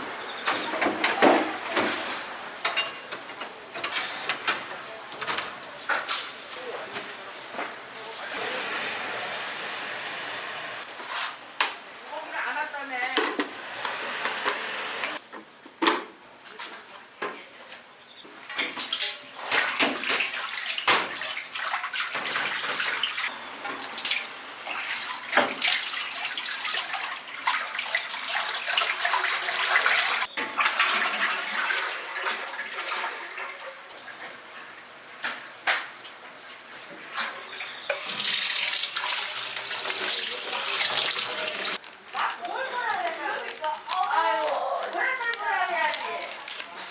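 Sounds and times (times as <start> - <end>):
knocks and clatter of handling: 0.5 - 8.1
water running and splashing: 18.9 - 33.7, 37.9 - 41.8.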